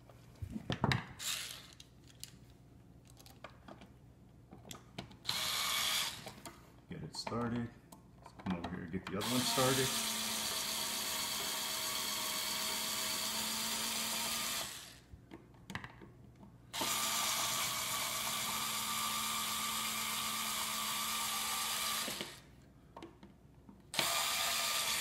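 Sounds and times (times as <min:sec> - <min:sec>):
cordless drill driving screws: 0:01.2 - 0:01.8, 0:05.2 - 0:06.4, 0:09.2 - 0:15.0, 0:16.7 - 0:22.5, 0:23.9 - 0:25.0.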